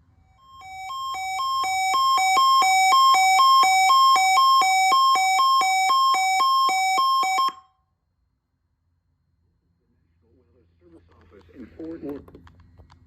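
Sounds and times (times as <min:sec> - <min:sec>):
two-tone alternating alarm: 0:00.3 - 0:07.8.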